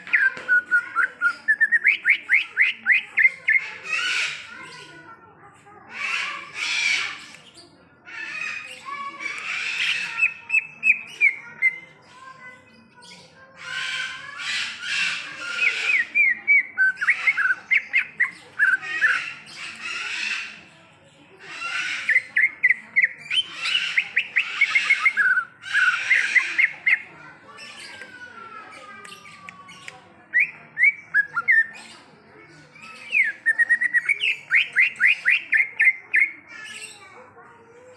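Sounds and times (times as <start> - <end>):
bird singing scratchy chirps: 0.0 - 4.6, 6.0 - 20.6, 21.5 - 28.2, 29.1 - 32.0, 32.7 - 37.0.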